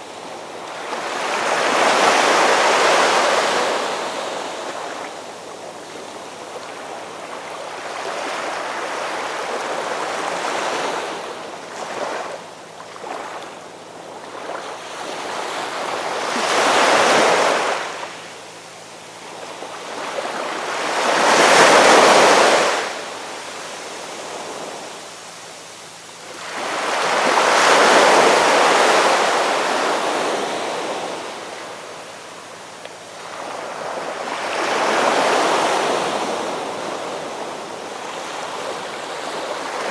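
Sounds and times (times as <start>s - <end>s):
ocean waves breaking: 0.0s - 18.2s, 26.3s - 39.9s
constant rush of surf: 0.0s - 39.9s.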